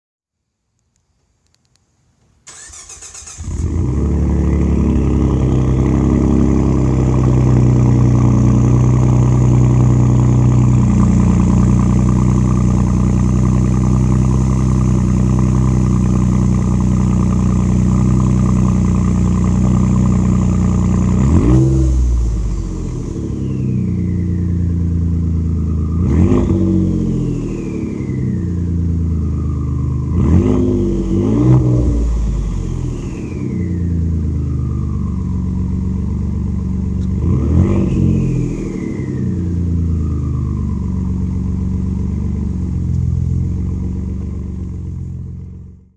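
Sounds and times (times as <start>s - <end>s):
engine throttle blips: 2.5s - 45.8s
car engine idling loud and deep: 3.4s - 45.9s
turbo whistling: 23.3s - 24.8s.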